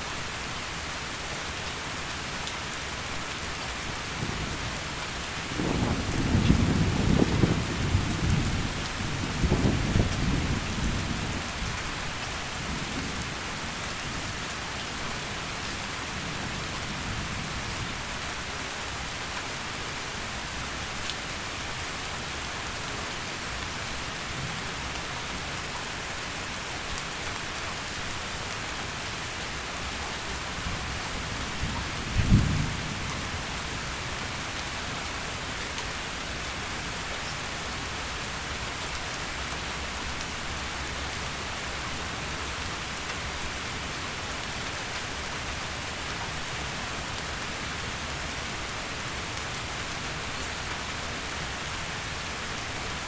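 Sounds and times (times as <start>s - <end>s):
heavy rain falling: 0.0s - 53.0s
rumble of thunder: 5.5s - 11.2s, 32.1s - 33.3s
loud thunderclap: 5.6s - 8.5s, 32.2s - 32.8s.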